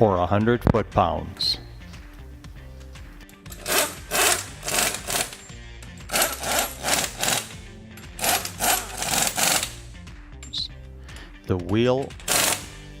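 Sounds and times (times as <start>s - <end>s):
background music: 0.0s - 13.0s
impact wrench hammering: 3.4s - 9.9s, 12.1s - 12.9s.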